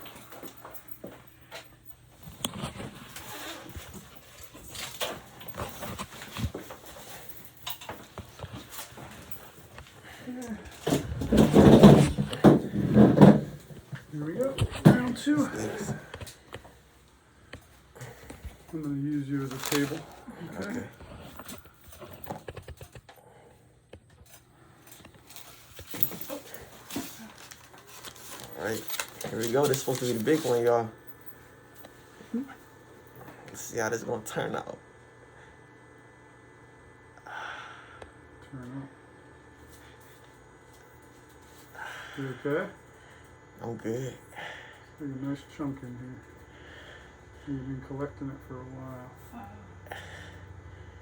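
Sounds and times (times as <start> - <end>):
rustling handling noise: 10.7 - 23.0, 24.9 - 32.0.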